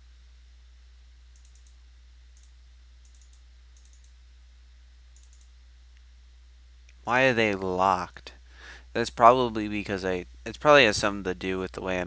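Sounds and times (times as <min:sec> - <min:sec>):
steady low hum: 0:00.0 - 0:12.0
computer clicks: 0:01.3 - 0:01.8, 0:02.4 - 0:04.2, 0:05.2 - 0:05.5.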